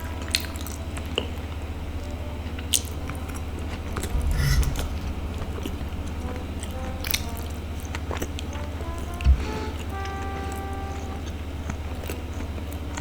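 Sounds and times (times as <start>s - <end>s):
soft thump: 4.1s - 7.6s.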